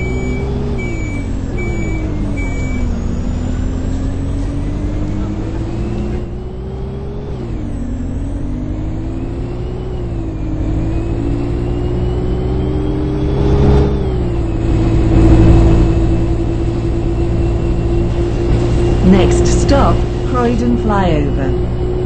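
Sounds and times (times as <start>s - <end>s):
bus drivetrain whine: 0.0s - 22.0s
low engine rumble: 14.4s - 22.0s.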